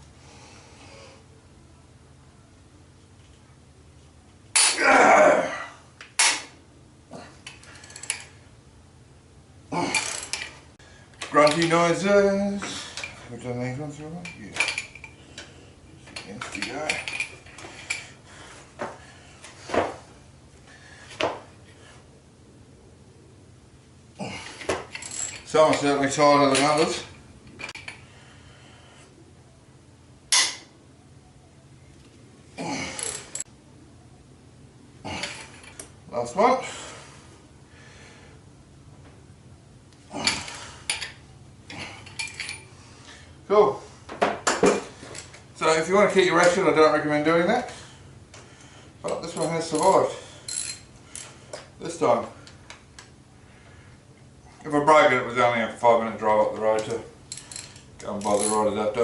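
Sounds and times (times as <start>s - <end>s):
man grunting with effort: 4.6s - 5.8s, 9.7s - 10.2s, 24.2s - 24.7s, 32.6s - 33.3s.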